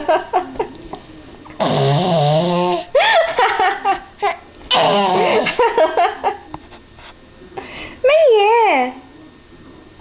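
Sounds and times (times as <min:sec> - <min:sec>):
child laughing: 0:03.0 - 0:04.5.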